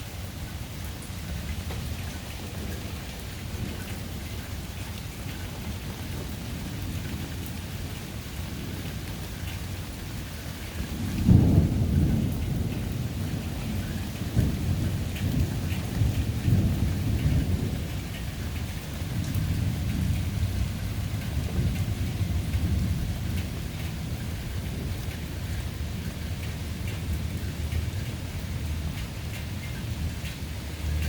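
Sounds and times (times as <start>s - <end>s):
steady rain: 0.0s - 31.0s
rolling thunder: 10.5s - 31.0s.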